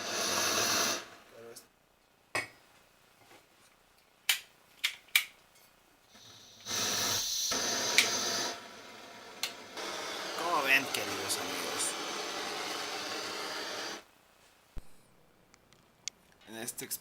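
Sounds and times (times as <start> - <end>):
blowtorch gas and flame hissing: 0.0 - 1.6, 6.1 - 14.1
blowtorch igniter clicks: 6.2 - 8.6, 9.4 - 14.0.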